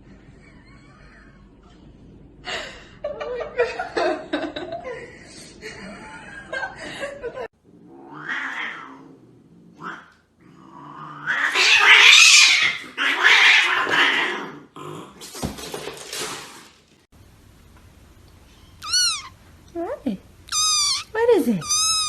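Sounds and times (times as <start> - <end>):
cat yowling: 11.2 - 14.4, 18.8 - 19.4, 20.5 - 22.0.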